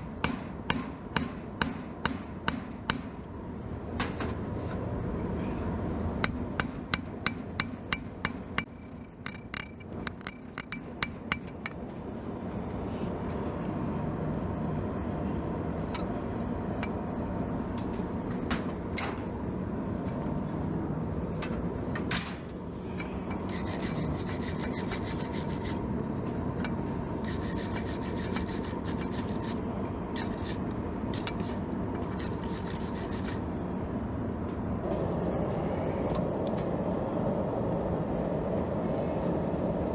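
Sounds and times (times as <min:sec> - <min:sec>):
steady rushing noise: 0:00.0 - 0:39.9
harsh scraping on metal: 0:23.5 - 0:25.8, 0:27.2 - 0:31.6, 0:32.2 - 0:33.4.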